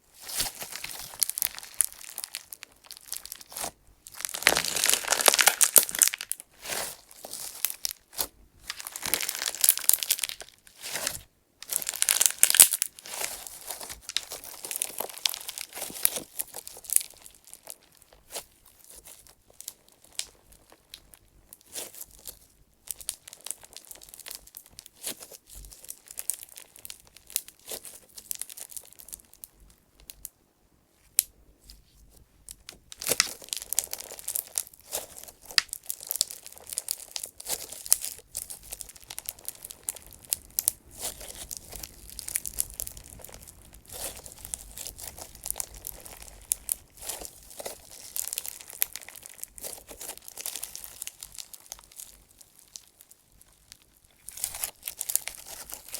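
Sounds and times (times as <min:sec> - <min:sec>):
clay chips crunching: 0:00.2 - 0:21.1, 0:32.5 - 0:55.9.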